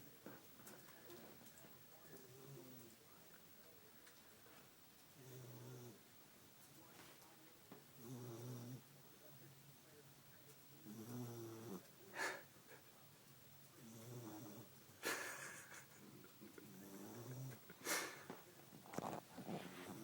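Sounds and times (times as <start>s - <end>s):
dog snoring: 5.2s - 6.0s, 8.0s - 8.8s, 10.8s - 11.9s, 13.8s - 14.7s, 16.7s - 18.1s, 18.8s - 20.0s.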